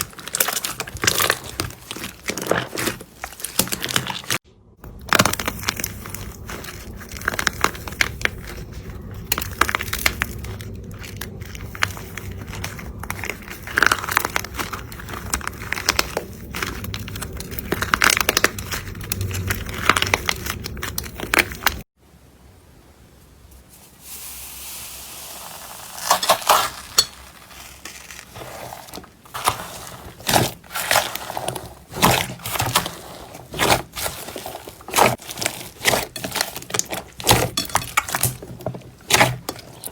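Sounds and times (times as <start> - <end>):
slime crackling and crunching: 0.0 - 21.9, 25.1 - 39.9
faint hiss: 22.0 - 26.0.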